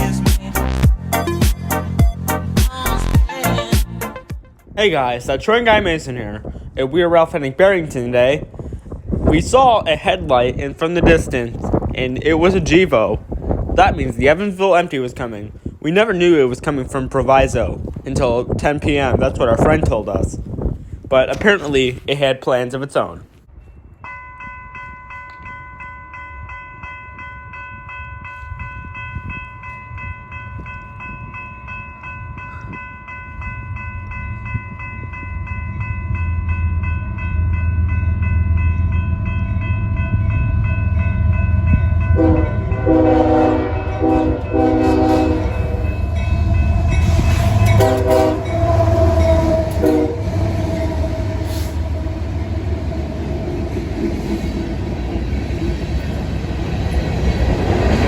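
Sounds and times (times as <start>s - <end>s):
steady high ringing: 23.7s - 54.9s
diesel locomotive engine rumble: 32.0s - 58.0s
locomotive horn blasts: 41.9s - 52.3s.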